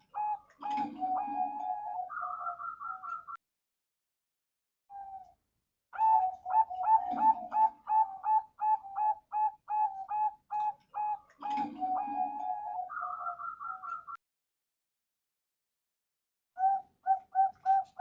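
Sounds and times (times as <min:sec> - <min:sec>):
dove cooing: 0:00.0 - 0:03.4, 0:06.0 - 0:14.2, 0:16.6 - 0:18.0.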